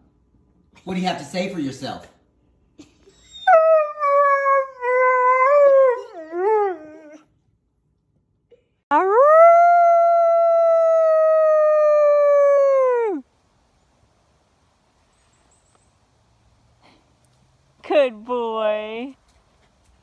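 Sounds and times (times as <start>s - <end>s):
dog howling: 8.9s - 13.2s.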